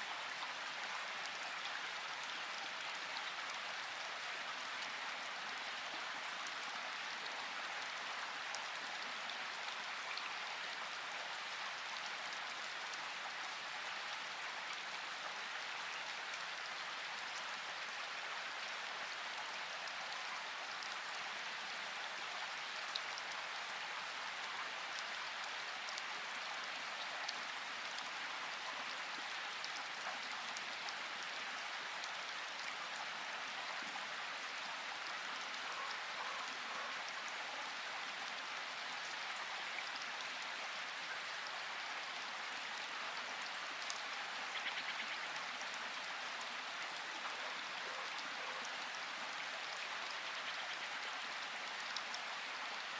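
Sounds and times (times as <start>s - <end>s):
steady rain hiss: 0.0s - 52.9s.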